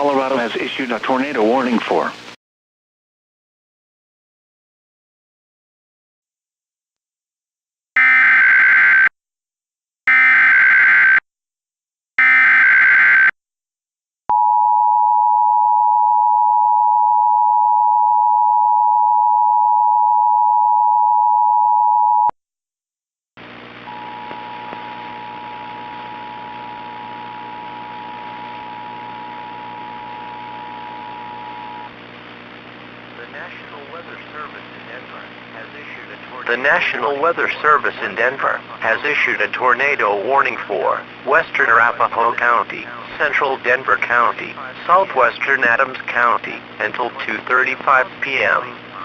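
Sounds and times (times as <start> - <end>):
broadcast hiss and hum: 0.0 - 2.4, 23.4 - 49.0.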